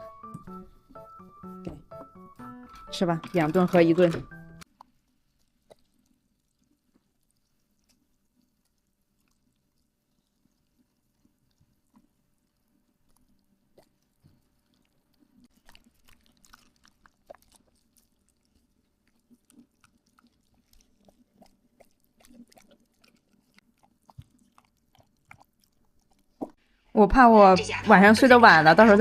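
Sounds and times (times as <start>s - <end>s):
wet chewing: 4.6s - 26.6s.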